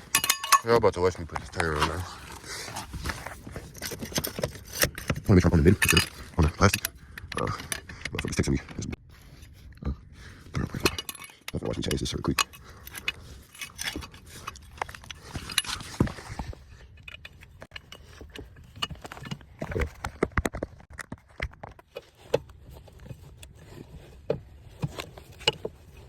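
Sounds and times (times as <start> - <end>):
metal tools knocking and clinking: 0.0 - 2.0, 3.7 - 8.8, 10.6 - 16.2.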